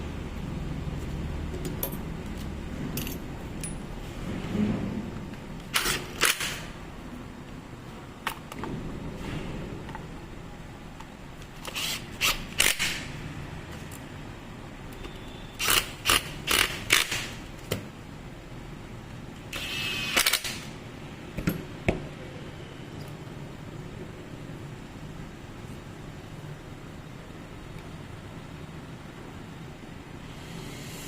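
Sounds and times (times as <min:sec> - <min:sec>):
clicks and clinks of hard parts: 0:01.6 - 0:03.9.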